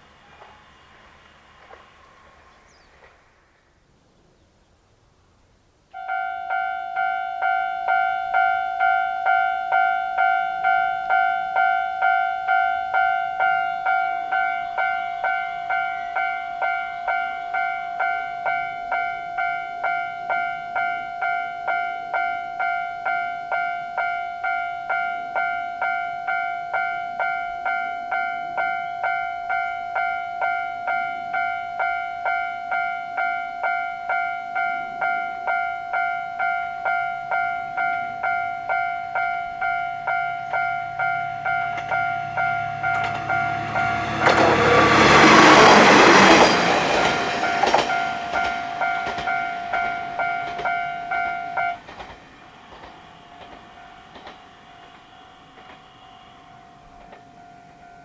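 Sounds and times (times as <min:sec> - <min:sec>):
level crossing bell two-tone clang: 0:06.0 - 0:44.5, 0:47.4 - 0:51.8.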